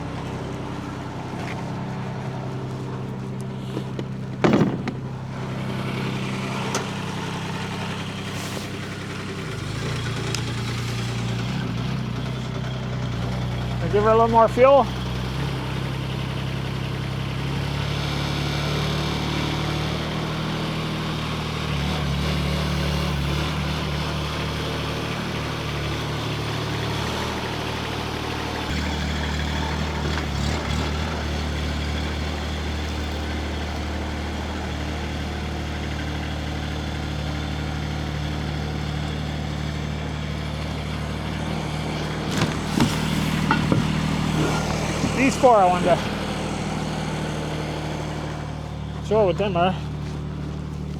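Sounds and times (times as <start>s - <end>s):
diesel engine running: 0.0s - 50.9s
short knocks: 3.5s - 7.9s, 42.0s - 46.2s.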